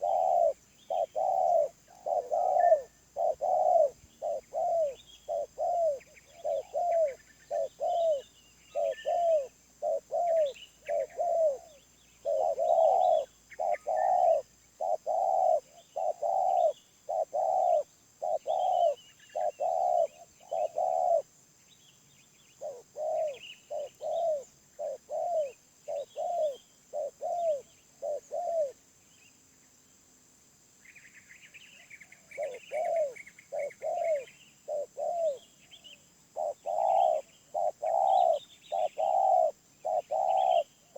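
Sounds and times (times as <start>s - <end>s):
bird twittering: 0.0s - 21.2s, 31.0s - 40.8s
dove cooing: 0.0s - 21.3s, 22.6s - 28.8s, 32.2s - 35.6s, 36.3s - 40.9s
small birds chirping: 0.0s - 30.2s, 30.8s - 40.9s.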